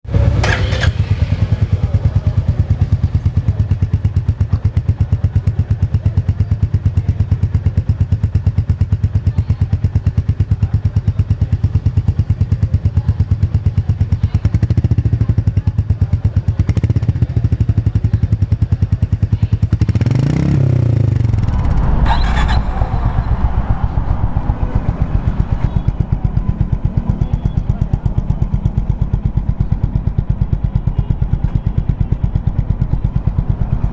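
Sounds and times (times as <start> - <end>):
motorcycle engine idling and revving: 0.0 - 33.9.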